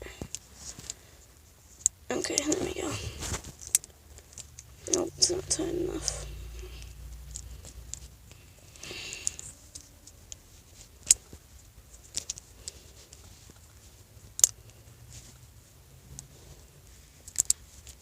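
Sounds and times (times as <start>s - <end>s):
light plastic rustling: 0.2s - 8.2s.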